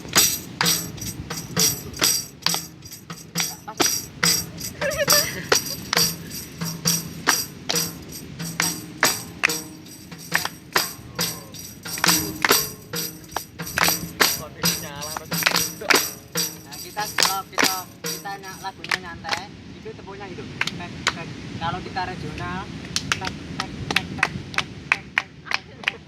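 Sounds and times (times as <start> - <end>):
tambourine struck in steady rhythm: 0.0 - 19.0.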